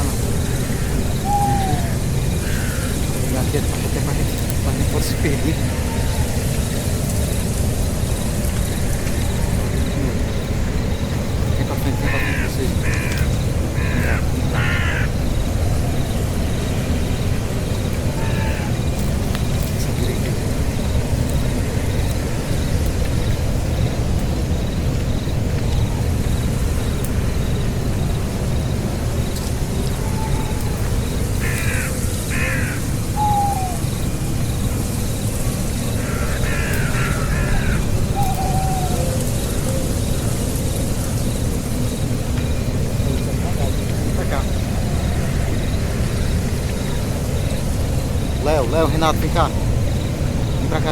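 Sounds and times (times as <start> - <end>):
harsh bird-like calls: 0.0 - 28.2, 28.8 - 50.9
falling whistle notes: 1.2 - 2.0.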